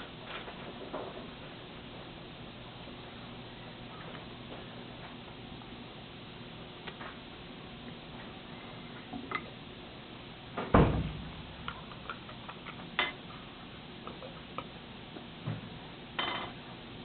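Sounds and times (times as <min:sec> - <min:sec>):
loud thump: 0:10.6 - 0:11.4.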